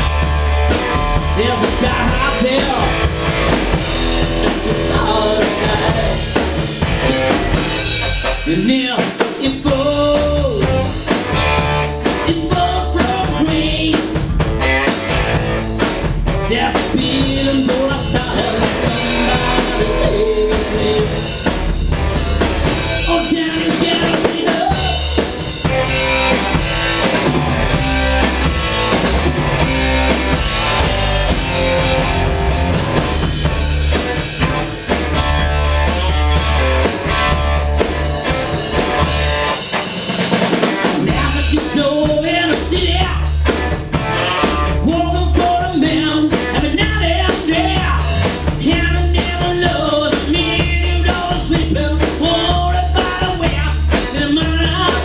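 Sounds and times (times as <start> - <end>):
pulsing bass line: 0.0 - 8.6, 9.8 - 23.2, 24.7 - 39.6
drum kit: 0.0 - 55.0
guitar: 0.0 - 55.0
wavering lead melody: 18.5 - 23.1.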